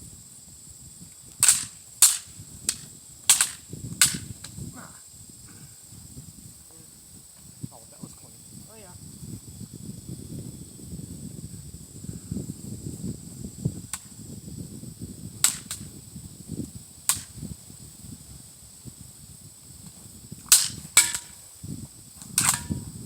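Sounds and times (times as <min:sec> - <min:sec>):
sharp sudden cracks: 0:01.4 - 0:04.6, 0:15.4 - 0:15.9, 0:17.1 - 0:17.4, 0:20.5 - 0:21.4, 0:22.3 - 0:22.8.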